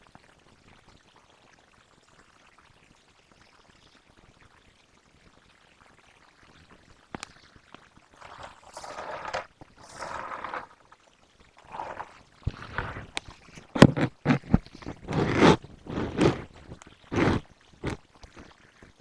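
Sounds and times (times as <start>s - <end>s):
liquid pouring: 8.2s - 11.0s, 11.6s - 18.9s.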